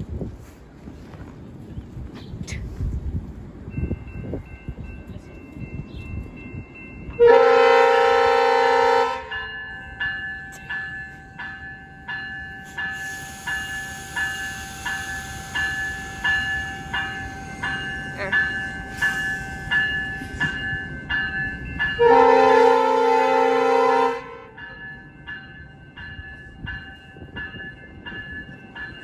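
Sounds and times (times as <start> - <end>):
train horn blast: 7.2 - 9.4, 22.0 - 24.6
bell ringing: 9.3 - 22.5.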